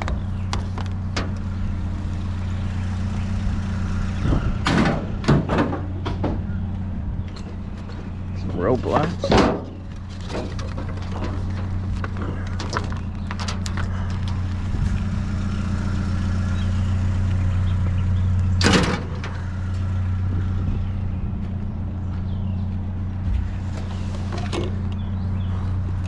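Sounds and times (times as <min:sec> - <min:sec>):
vehicle engine droning: 0:00.0 - 0:26.0.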